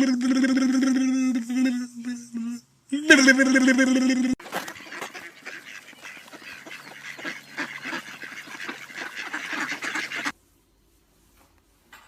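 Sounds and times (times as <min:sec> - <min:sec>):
waterfowl calling: 0:04.4 - 0:10.4.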